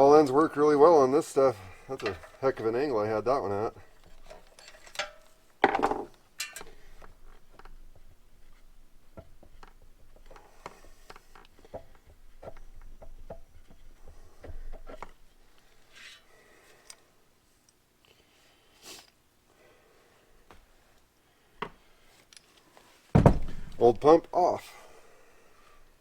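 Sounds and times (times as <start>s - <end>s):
metal hand tools clinking: 1.7s - 3.0s, 3.8s - 5.4s, 6.4s - 6.8s
loud metal clank: 23.2s - 24.0s.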